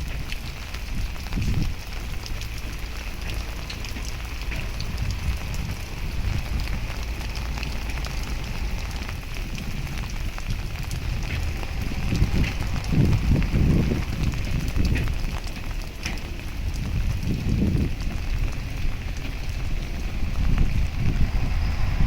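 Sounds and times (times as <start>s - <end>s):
heavy rain falling: 0.0s - 22.0s
steady low rumble: 0.0s - 22.0s.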